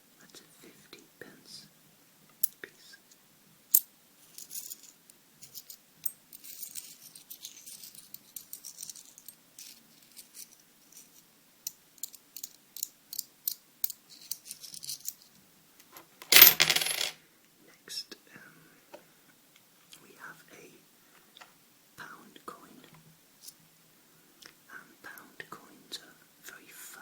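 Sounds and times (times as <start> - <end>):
coins jangling rattle: 6.4 - 9.8, 16.3 - 17.1
coins clicking and clinking: 16.2 - 17.2.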